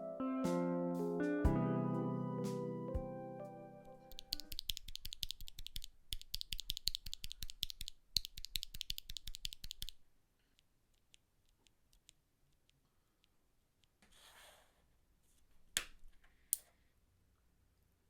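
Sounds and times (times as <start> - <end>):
mechanical keyboard clicking: 4.1 - 10.0.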